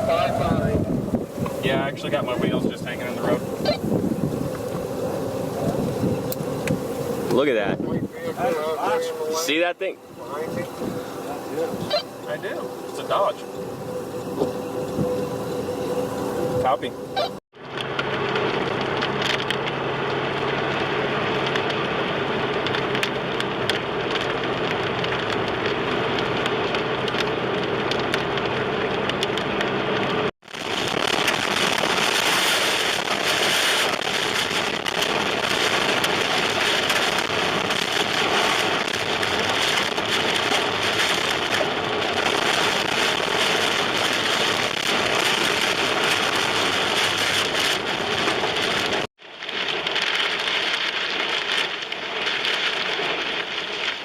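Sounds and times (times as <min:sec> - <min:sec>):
heavy rain pouring: 0:00.0 - 0:17.4, 0:18.8 - 0:54.0
low steady hum: 0:00.0 - 0:17.4.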